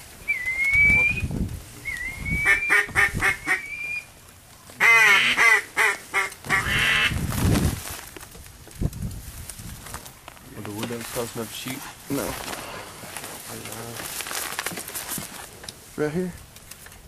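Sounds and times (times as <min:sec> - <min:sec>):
whistled duck call notes: 0:00.3 - 0:04.1, 0:04.8 - 0:07.1
duck call quacking: 0:02.4 - 0:04.0, 0:04.8 - 0:07.2.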